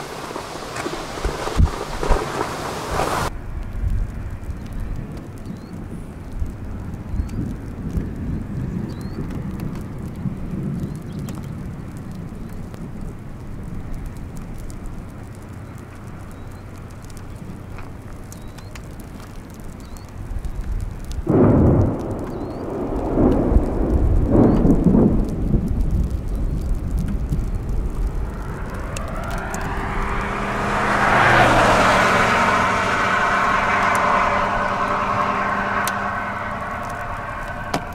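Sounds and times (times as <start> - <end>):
rushing sound with steady tones: 0.0 - 8.0, 18.0 - 37.9
thunder rumbling: 0.0 - 17.6, 19.0 - 37.9
strong wind: 0.0 - 37.9.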